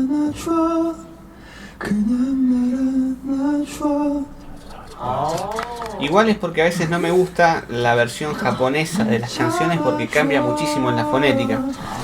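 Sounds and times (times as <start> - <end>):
person singing a cappella: 0.0 - 6.1, 6.8 - 12.0
singer breathing: 1.2 - 1.8, 9.6 - 12.0.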